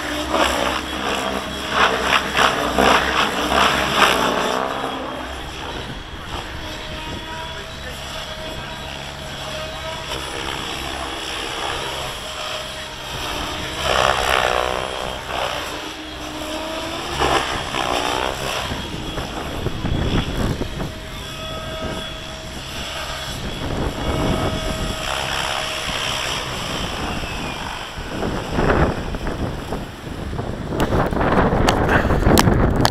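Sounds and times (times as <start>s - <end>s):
rc helicopter motor whine: 0.0s - 32.9s
wind buffeting microphone: 0.0s - 32.9s.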